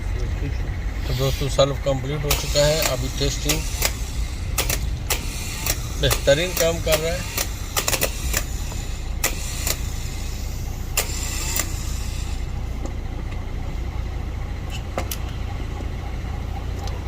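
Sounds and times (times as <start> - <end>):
steady low hum: 0.0 - 17.0
starter motor whirring: 1.0 - 13.7.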